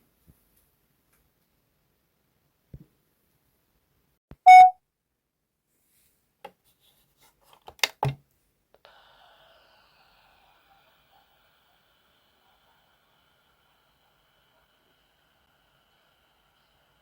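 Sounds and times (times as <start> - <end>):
short sharp sounds: 4.5 - 4.7
electronic beep: 4.5 - 4.8
faint tone: 4.5 - 4.8.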